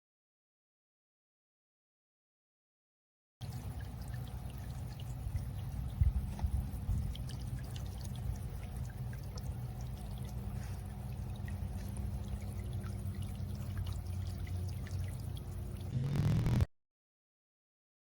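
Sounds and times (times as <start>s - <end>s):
fountain water trickling: 3.4s - 15.9s.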